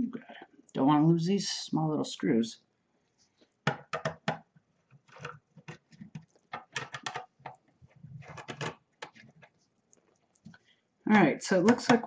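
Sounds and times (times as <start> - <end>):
clicks and scrapes on metal case: 5.1 - 9.6.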